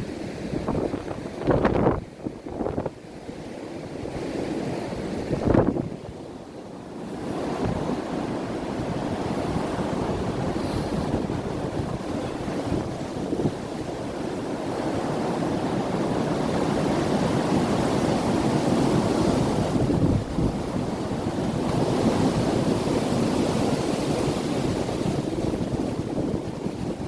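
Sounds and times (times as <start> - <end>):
wind buffeting microphone: 0.0 - 6.3, 7.0 - 27.0.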